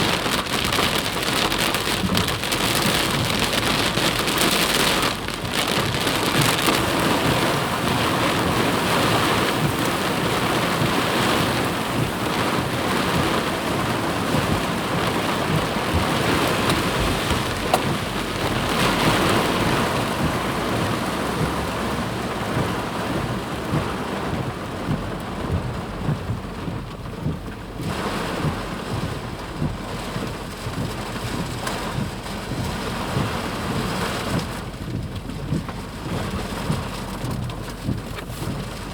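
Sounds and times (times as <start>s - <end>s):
flood water rushing: 0.0s - 25.7s.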